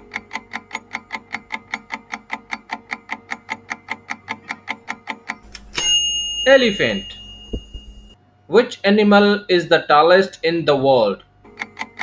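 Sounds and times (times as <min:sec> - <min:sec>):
quick clock ticks: 0:00.0 - 0:05.7.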